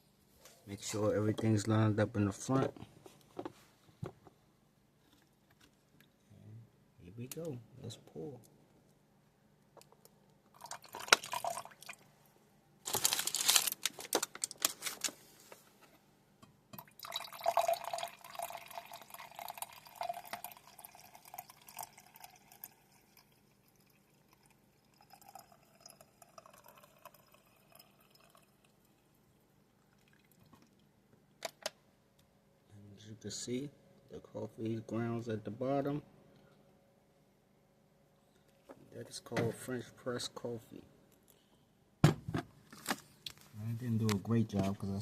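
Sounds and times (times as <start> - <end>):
coffee pouring into a cup: 10.5 - 12.1, 16.8 - 30.9.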